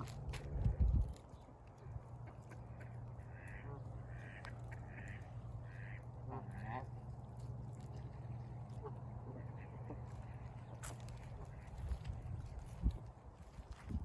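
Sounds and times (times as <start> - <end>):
low hum: 0.0 - 13.8
waterfowl honking: 2.2 - 7.2, 8.4 - 12.0.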